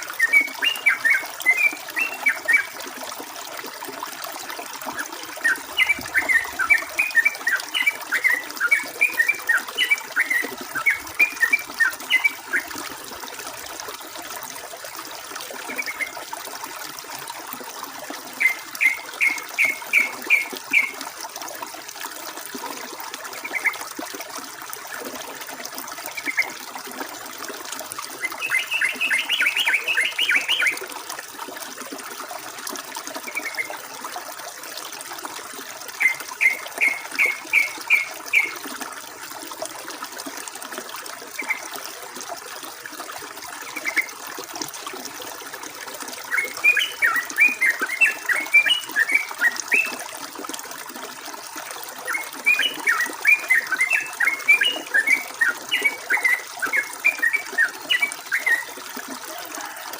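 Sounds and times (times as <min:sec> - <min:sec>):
trickling running water: 0:00.0 - 0:59.9
bird chattering song: 0:05.4 - 0:12.7, 0:18.4 - 0:20.9, 0:28.2 - 0:30.8, 0:36.0 - 0:38.5.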